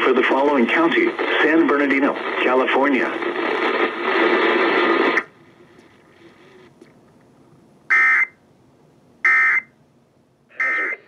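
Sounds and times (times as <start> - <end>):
loud steady noise: 0.0 - 6.8.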